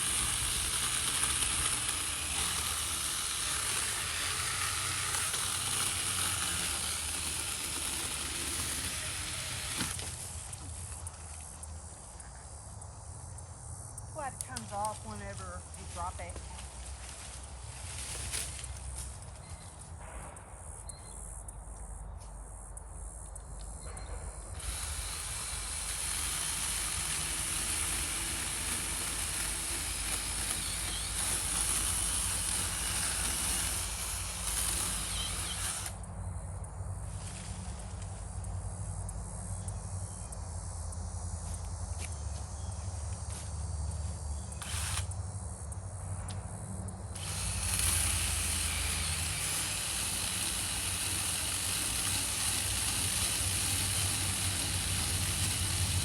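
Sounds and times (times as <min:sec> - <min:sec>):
chainsaw cutting wood: 0:00.0 - 0:11.4, 0:24.4 - 0:36.1, 0:44.4 - 0:45.2, 0:47.1 - 0:56.0.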